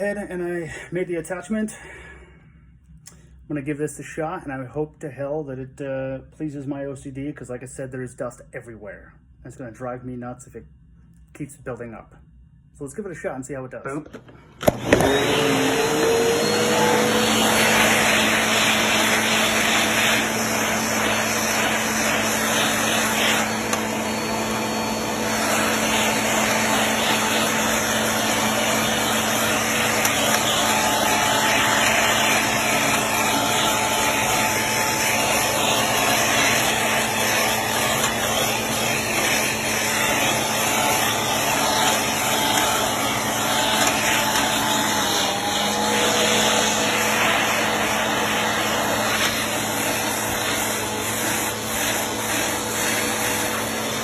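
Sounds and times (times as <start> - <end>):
vacuum cleaner running: 14.1 - 54.0.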